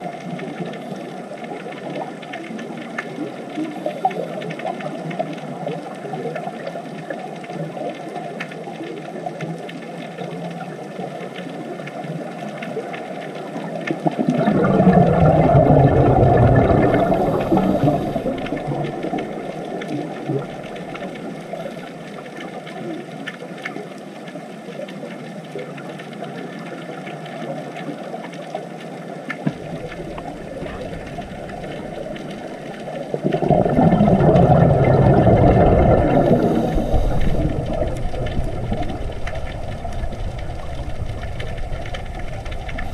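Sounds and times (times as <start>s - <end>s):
underwater crackling hiss: 0.0s - 42.9s
underwater clicks: 11.3s - 25.0s, 25.6s - 42.9s
rumbling swell of noise: 14.3s - 21.8s, 29.6s - 42.9s.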